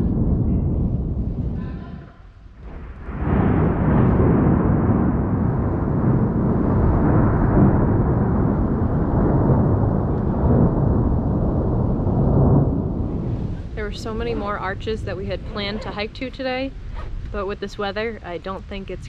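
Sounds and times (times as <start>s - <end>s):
loud rolling thunder: 0.0s - 19.0s.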